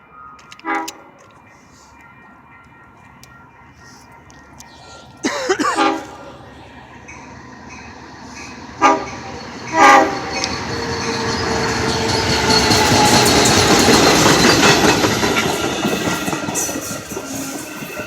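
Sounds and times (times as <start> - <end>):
passing train running noise: 0.0 - 18.0
locomotive horn blasts: 0.6 - 1.1, 5.8 - 6.3, 8.8 - 10.5.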